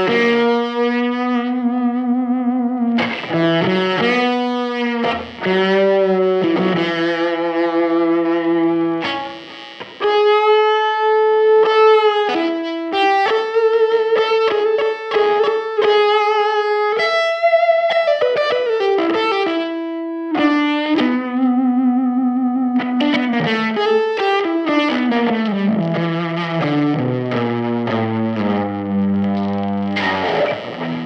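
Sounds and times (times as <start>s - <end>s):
electric guitar lead with vibrato: 0.0s - 31.0s.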